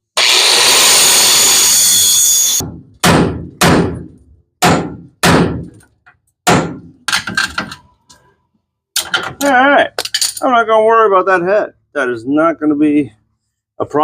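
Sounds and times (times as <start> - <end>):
power tool running: 0.0 - 2.6.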